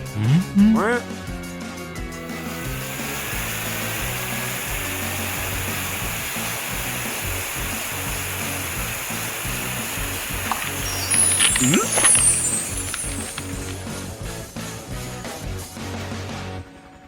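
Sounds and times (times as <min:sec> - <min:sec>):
background music with bass line: 0:00.0 - 0:02.8
cartoon rushing hiss: 0:02.3 - 0:13.8.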